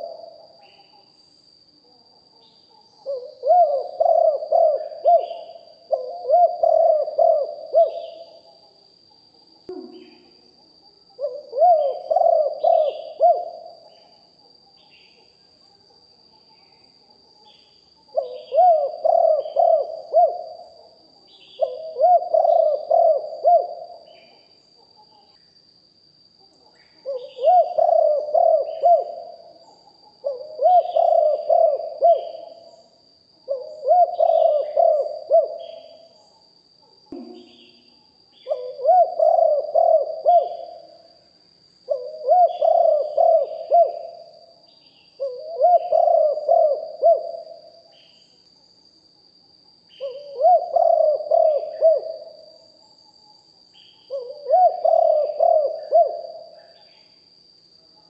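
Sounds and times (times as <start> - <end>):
dove cooing: 0.0 - 1.0, 1.9 - 8.6, 9.7 - 10.4, 11.2 - 14.1, 18.1 - 24.4, 26.8 - 32.8, 33.5 - 36.1, 38.4 - 40.9, 41.9 - 44.5, 45.2 - 47.8, 50.0 - 52.6, 54.1 - 56.8
thin steady high whine: 0.0 - 58.0
small birds chirping: 33.5 - 40.8.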